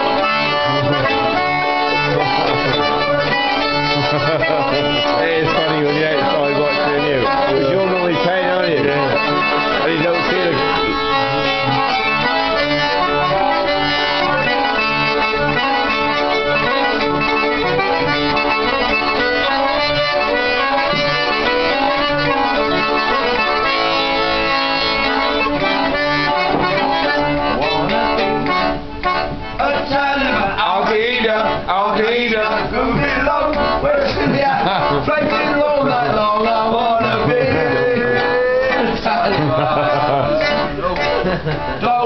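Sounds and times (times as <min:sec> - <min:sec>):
reedy instrumental tune: 0:00.0 - 0:42.0.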